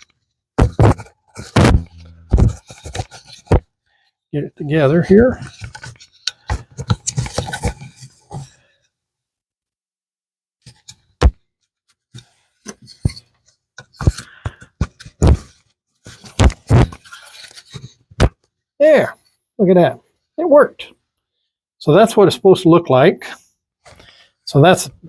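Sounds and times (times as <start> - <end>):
wood knocking and scraping: 0.6 - 3.7.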